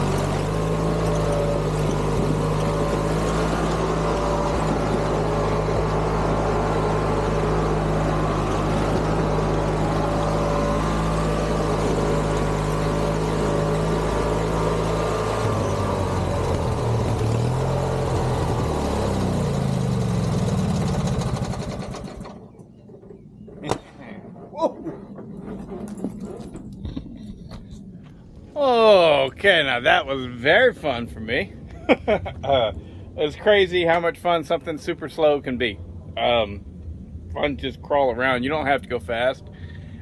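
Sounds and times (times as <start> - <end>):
garden tractor engine running: 0.0 - 22.6, 28.6 - 31.4.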